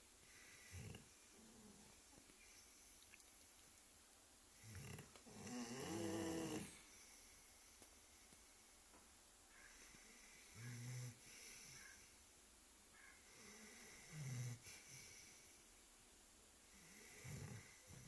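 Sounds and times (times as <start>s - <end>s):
dog snoring: 0.3s - 2.2s, 4.6s - 7.3s, 9.7s - 12.0s, 13.3s - 15.5s, 16.7s - 18.0s.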